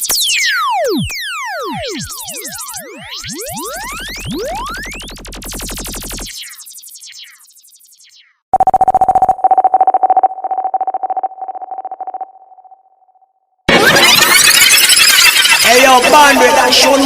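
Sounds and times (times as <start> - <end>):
stuttering electronic beep: 0.0 - 13.0, 13.7 - 17.0
buzzy synth echoing: 0.8 - 7.4.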